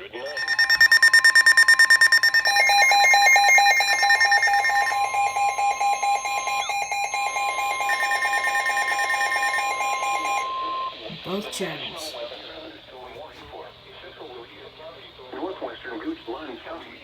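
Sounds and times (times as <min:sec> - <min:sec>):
rapidly pulsing alarm tone: 0:00.0 - 0:12.0
steady high alarm tone: 0:00.0 - 0:12.1.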